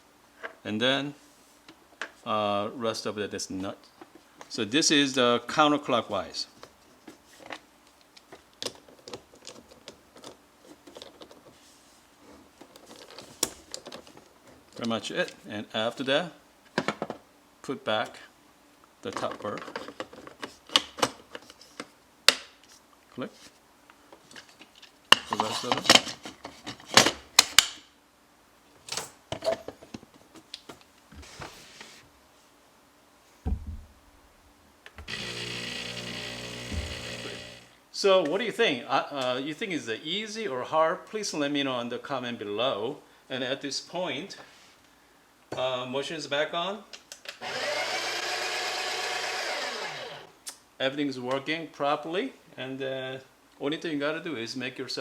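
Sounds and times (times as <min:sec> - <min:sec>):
coffee grinder motor running: 0:35.1 - 0:37.7, 0:47.4 - 0:50.3.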